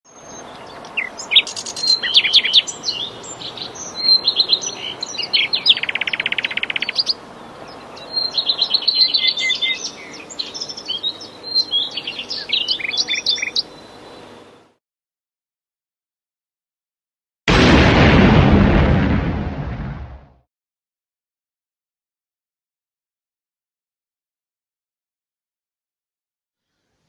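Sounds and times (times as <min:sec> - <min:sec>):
birds chirping and singing: 0:00.1 - 0:14.7
steady outdoor hiss: 0:00.1 - 0:14.8.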